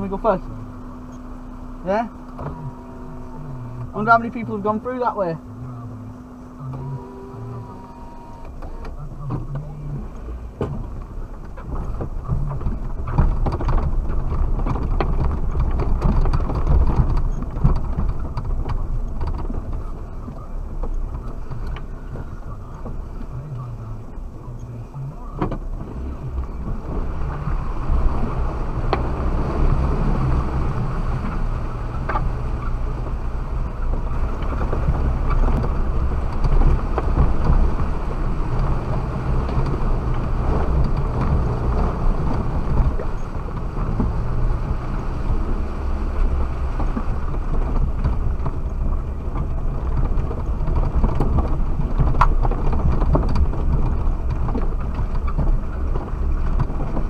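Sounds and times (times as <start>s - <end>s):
body and suspension rattles: 0.0s - 57.0s
engine and drivetrain rumble: 0.0s - 57.0s.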